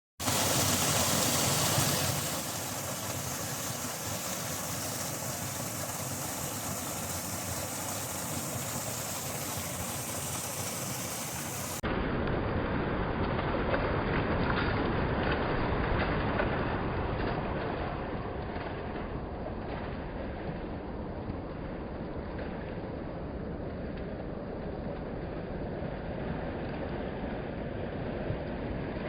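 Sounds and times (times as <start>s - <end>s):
waterfall rushing into sea: 0.2s - 12.6s
low rumble: 11.6s - 29.0s.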